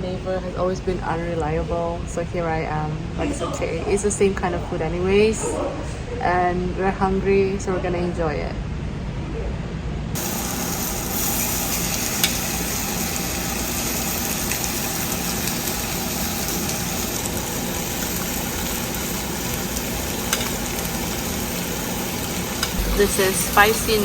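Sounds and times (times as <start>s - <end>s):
food sizzling: 10.2s - 24.0s
low hum: 17.2s - 24.0s.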